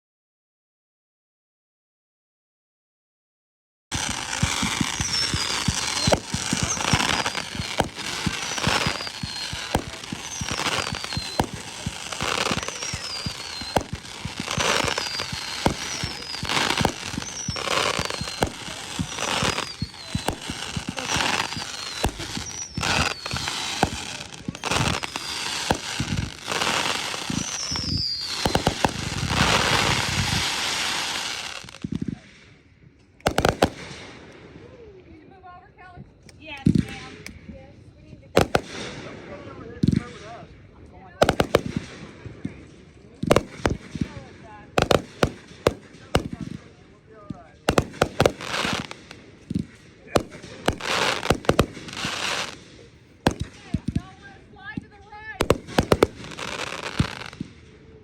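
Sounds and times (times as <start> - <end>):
falling firework whistle: 3.9 - 32.6, 47.7 - 52.6, 55.4 - 57.5
sharp firework pops: 3.9 - 34.7, 36.2 - 39.1, 39.7 - 40.3, 41.2 - 54.1, 54.7 - 57.7
fireworks bangs and crackling: 3.9 - 58.0.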